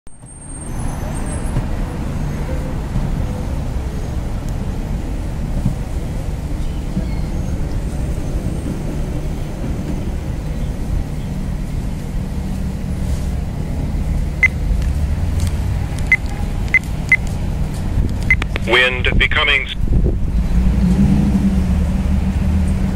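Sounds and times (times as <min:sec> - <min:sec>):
moving vehicle rumble from inside: 0:00.1 - 0:19.2, 0:19.8 - 0:22.9.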